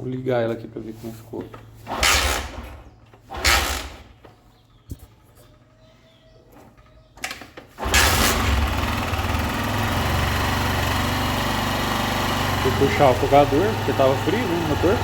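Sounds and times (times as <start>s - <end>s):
engine running steadily: 7.8s - 15.0s.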